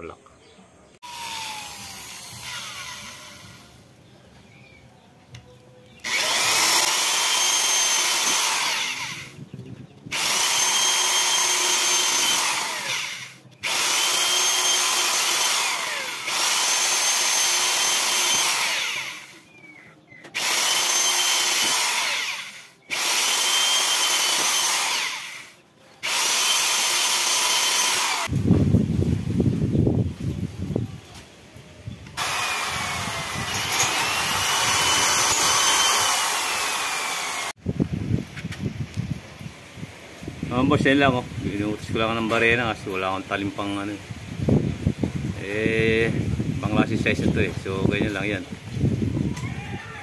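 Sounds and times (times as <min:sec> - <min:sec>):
electric drill whining through steel: 0:01.0 - 0:04.0, 0:05.9 - 0:09.4, 0:10.1 - 0:19.6, 0:20.2 - 0:28.4, 0:32.0 - 0:37.6.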